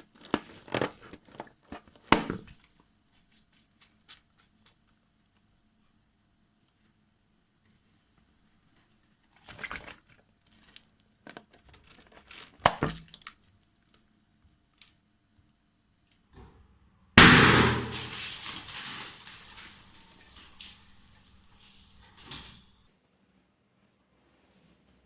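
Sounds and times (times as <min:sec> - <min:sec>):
rubbery handling noises: 0:00.0 - 0:05.1, 0:07.7 - 0:14.1
balloon bursting bang: 0:17.2 - 0:18.6.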